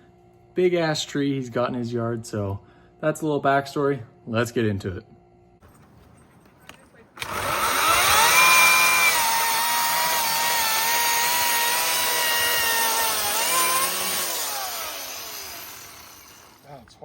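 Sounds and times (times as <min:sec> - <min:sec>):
chainsaw cutting branches: 0:07.2 - 0:16.8.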